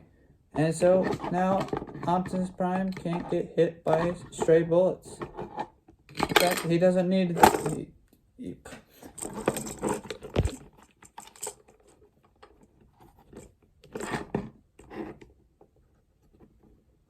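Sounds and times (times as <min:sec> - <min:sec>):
plastic toy parts clicking and rattling: 0:05.2 - 0:06.8.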